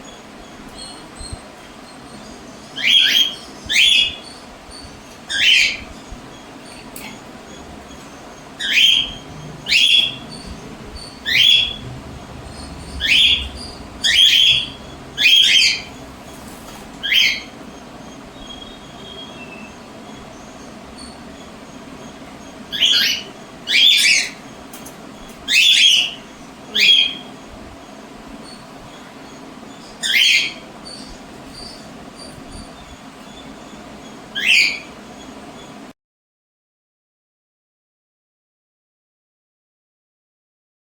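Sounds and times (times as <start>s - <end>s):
cockatiels screeching: 0.7s - 24.5s, 25.2s - 27.3s, 28.4s - 35.0s.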